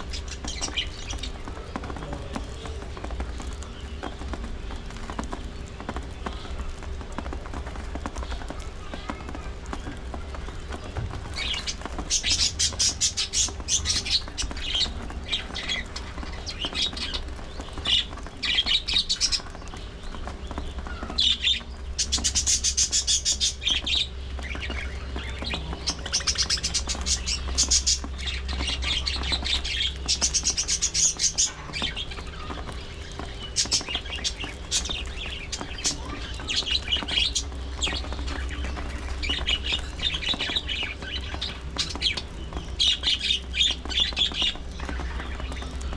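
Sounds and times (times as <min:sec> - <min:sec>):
low steady hum: 0:00.0 - 0:45.9
budgerigars chirping: 0:10.8 - 0:45.9.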